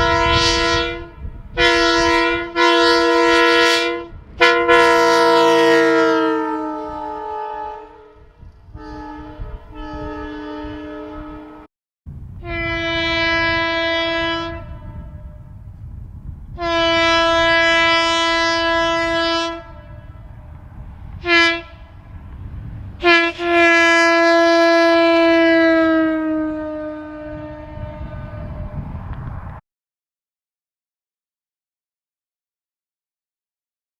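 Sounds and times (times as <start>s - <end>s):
train air horn blasts: 0.0s - 11.7s, 12.4s - 15.7s, 16.5s - 20.6s, 21.2s - 22.1s, 23.0s - 29.1s
low rumble: 19.0s - 23.1s, 27.2s - 29.6s.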